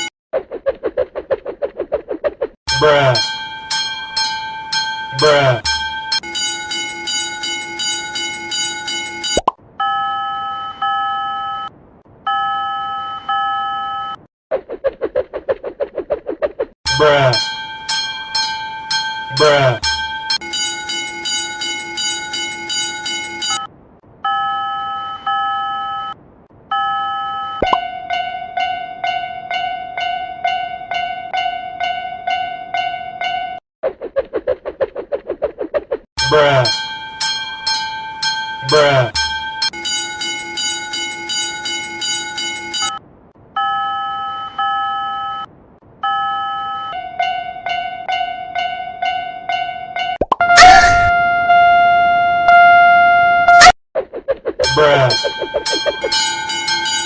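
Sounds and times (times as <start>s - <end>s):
railroad crossing bell ringing: 2.7s - 11.7s, 12.3s - 14.2s, 16.9s - 33.6s, 36.2s - 43.0s, 43.6s - 50.2s, 54.7s - 57.0s
slower fading rings: 54.7s - 57.0s.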